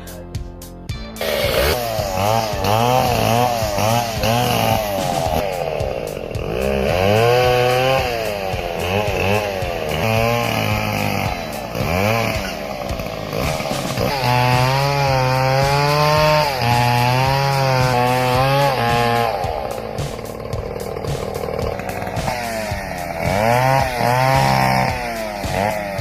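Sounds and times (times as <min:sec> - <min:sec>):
chainsaw cutting wood: 0:01.0 - 0:26.0.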